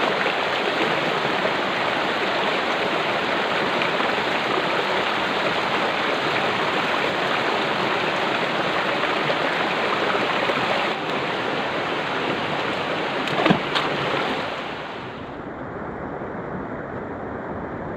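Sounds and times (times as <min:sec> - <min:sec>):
river water rushing: 0:00.0 - 0:15.4
sharp knocks or splashes: 0:13.2 - 0:14.4.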